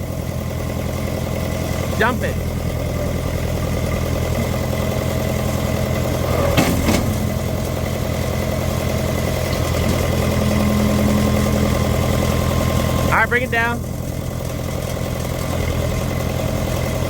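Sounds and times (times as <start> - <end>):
backhoe engine running: 0.0 - 17.0.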